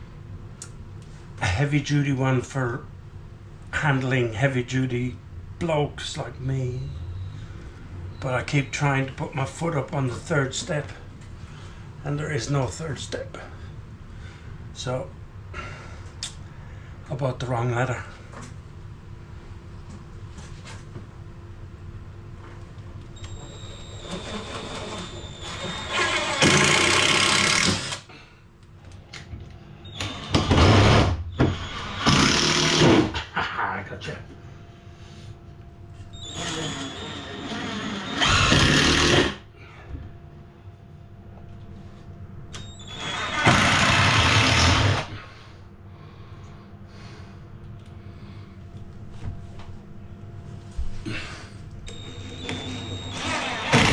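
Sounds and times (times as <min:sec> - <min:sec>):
power drill whining into timber: 0:23.2 - 0:28.1, 0:30.0 - 0:33.1, 0:36.3 - 0:39.4, 0:42.8 - 0:45.2, 0:51.9 - 0:53.9.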